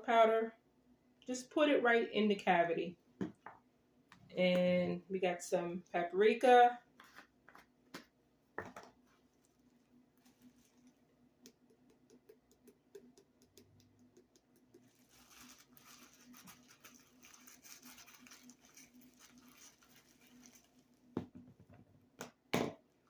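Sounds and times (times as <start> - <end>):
spice shaken from container: 14.7 - 20.9.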